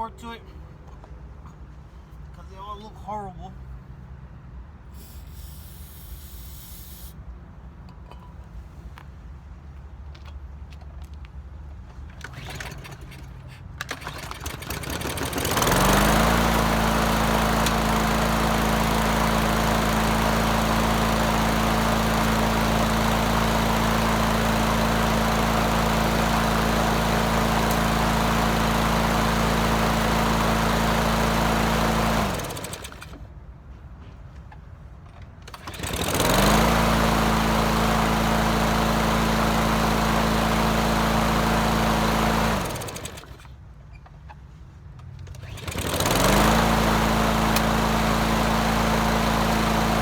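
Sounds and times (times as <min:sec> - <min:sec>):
lawn mower engine running: 0:12.1 - 0:33.2, 0:35.5 - 0:43.5, 0:45.2 - 0:50.0.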